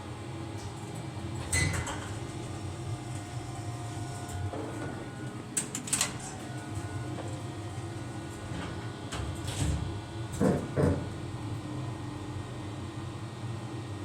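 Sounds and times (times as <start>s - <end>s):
loud clunk with rattle: 8.5s - 11.1s.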